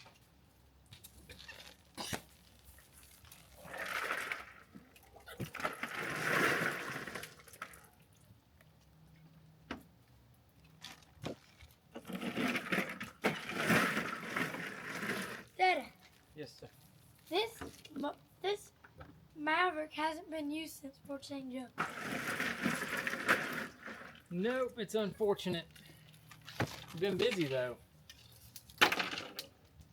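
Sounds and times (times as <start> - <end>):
water splashing and sloshing: 2.5 - 8.3, 10.8 - 18.0, 21.8 - 24.4.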